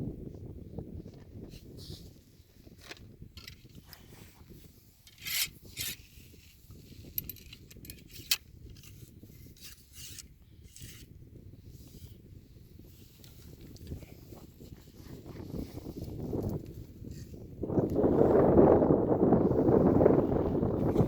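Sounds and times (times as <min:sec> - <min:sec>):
ramrod scraping in gun barrel: 0:02.7 - 0:11.1.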